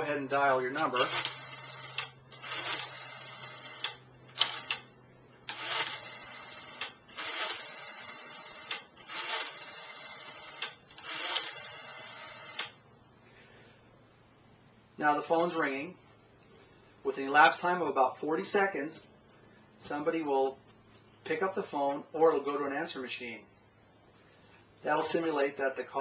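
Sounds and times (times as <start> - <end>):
rotary phone dial clicking and whirring: 0.9 - 12.8.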